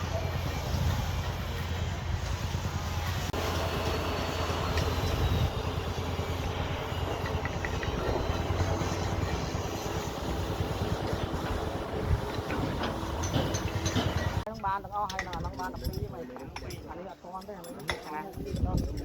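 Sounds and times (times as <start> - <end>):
construction machinery rumble: 0.0 - 14.5.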